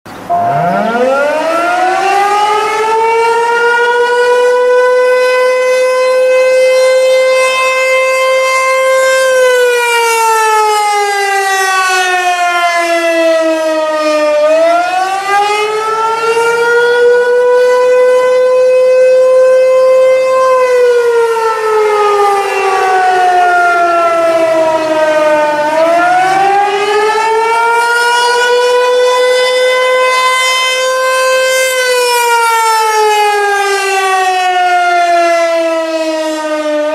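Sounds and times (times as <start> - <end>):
warning siren wailing: 0.1 - 36.9.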